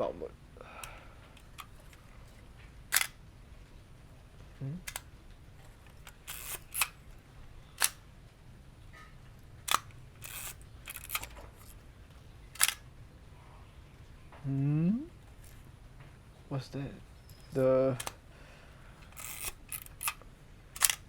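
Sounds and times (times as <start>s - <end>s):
camera shutter clicks: 2.9s - 3.2s, 6.0s - 7.0s, 7.8s - 8.0s, 9.7s - 11.8s, 12.6s - 12.9s, 19.1s - 20.2s, 20.8s - 21.0s
rasping film advance winding: 5.9s - 7.0s, 9.7s - 11.8s, 19.0s - 20.2s, 20.8s - 21.0s.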